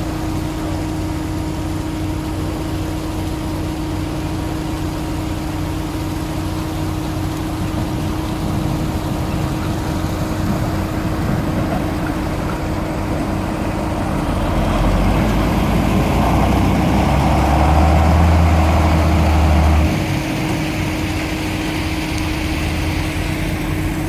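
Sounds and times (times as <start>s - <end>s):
constant hum: 0.0s - 17.4s
deep drone: 0.0s - 24.0s.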